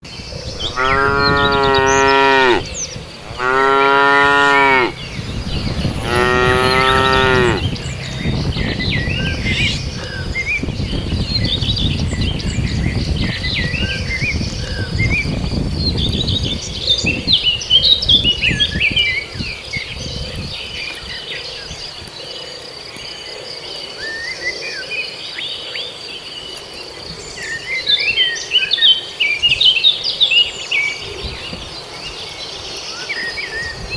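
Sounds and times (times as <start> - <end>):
birds chirping: 0.0 - 33.9
high insect whine: 0.1 - 33.9
cow mooing: 0.6 - 8.2.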